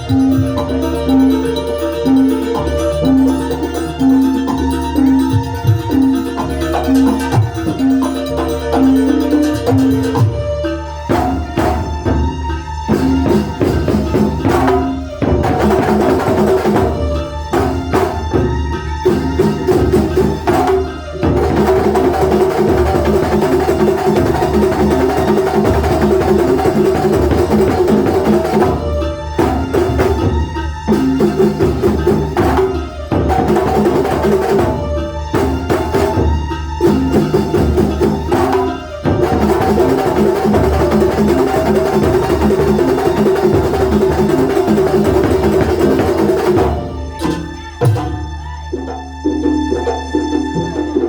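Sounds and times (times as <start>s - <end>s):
steady melodic line: 0.0s - 18.3s
drums playing dense rhythm: 0.0s - 51.0s.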